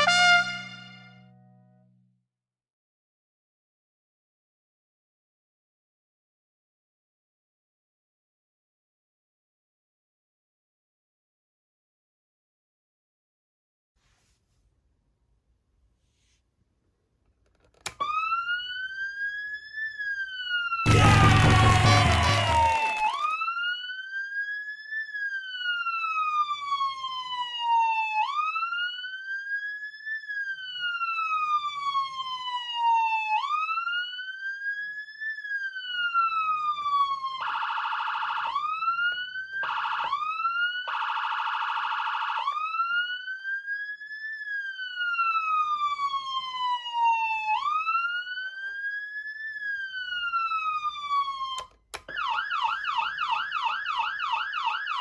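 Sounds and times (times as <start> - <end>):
electronic siren wail: 0.0 - 1.6, 18.0 - 24.0, 35.8 - 55.0
harsh buzzing tone: 20.9 - 23.2
siren switching off click: 20.9 - 23.3, 51.5 - 53.6.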